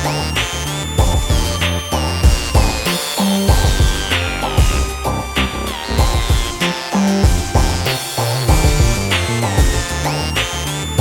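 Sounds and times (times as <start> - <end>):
bass line: 0.0 - 11.0
drum hits: 2.2 - 5.0, 6.0 - 7.9, 8.5 - 9.9.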